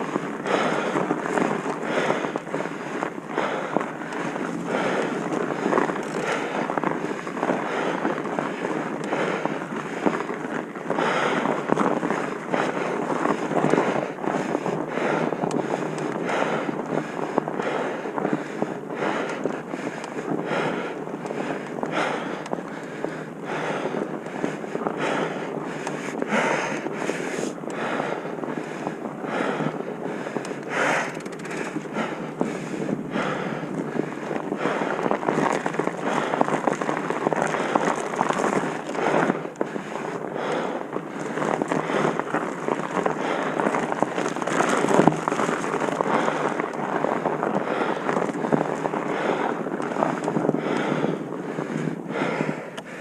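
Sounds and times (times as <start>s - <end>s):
wind buffeting microphone: 0.0s - 53.0s
crackling rattling and knocking: 28.6s - 52.9s.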